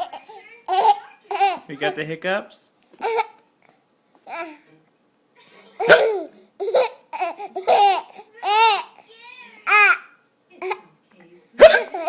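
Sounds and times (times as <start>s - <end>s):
baby laughing and babbling: 0.0s - 2.0s, 3.0s - 3.4s, 4.2s - 4.6s, 5.8s - 10.9s, 11.7s - 12.0s
baby hiccups: 5.8s - 8.0s.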